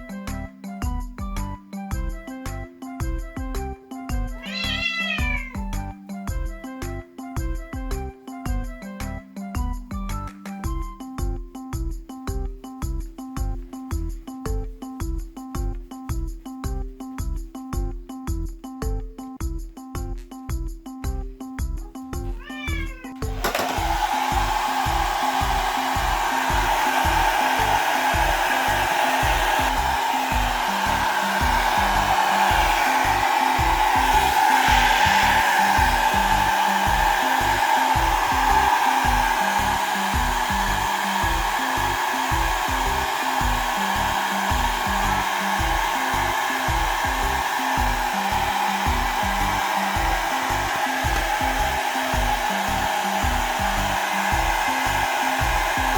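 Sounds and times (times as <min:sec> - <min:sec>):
background music with beat: 0:00.0 - 0:55.9
hair dryer blowing: 0:23.2 - 0:55.9.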